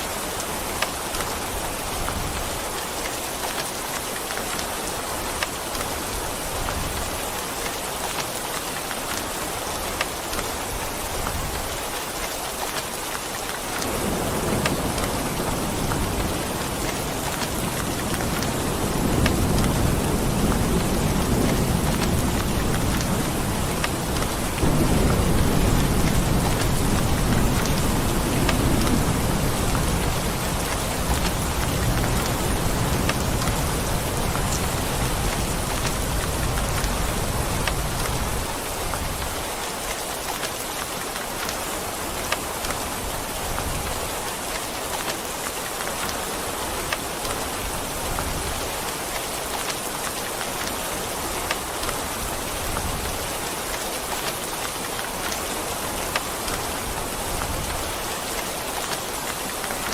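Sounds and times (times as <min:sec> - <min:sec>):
heavy rain: 0:00.0 - 0:59.9
raindrop ticks: 0:02.0 - 0:04.8, 0:06.6 - 0:42.8, 0:43.4 - 0:59.9
rolling thunder: 0:13.8 - 0:38.5.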